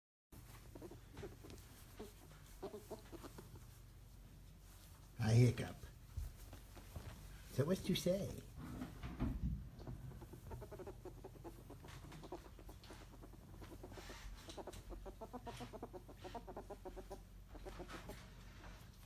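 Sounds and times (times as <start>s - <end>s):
ferret clucking chatter: 0.4s - 4.2s, 9.7s - 18.5s.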